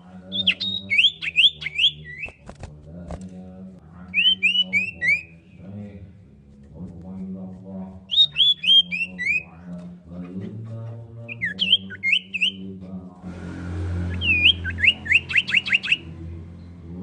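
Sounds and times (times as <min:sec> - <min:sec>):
low human voice chanting: 0:00.0 - 0:17.0
bird whistled calls: 0:00.3 - 0:02.4, 0:04.1 - 0:05.3, 0:08.1 - 0:09.4, 0:11.3 - 0:12.6, 0:14.0 - 0:16.1.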